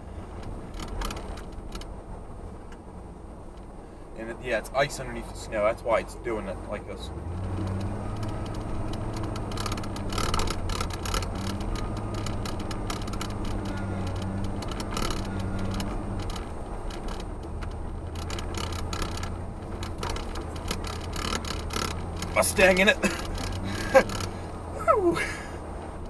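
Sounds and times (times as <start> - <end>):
truck engine running: 5.2 - 26.0
sharp clicks and ticks: 7.4 - 24.4.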